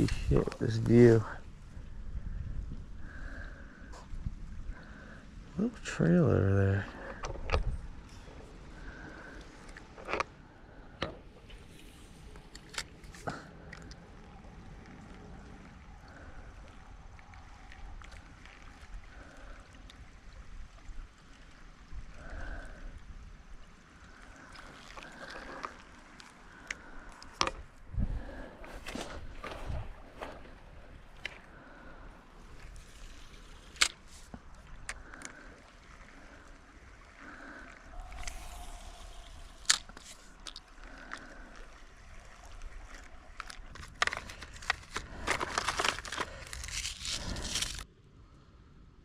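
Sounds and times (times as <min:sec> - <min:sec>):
shallow creek running: 0:00.0 - 0:48.8.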